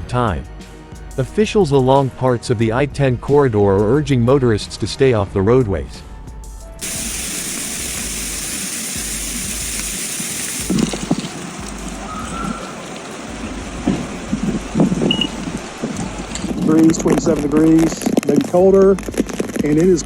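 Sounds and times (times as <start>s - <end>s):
falling precipitation hiss: 6.8s - 20.0s
wind: 10.6s - 19.7s.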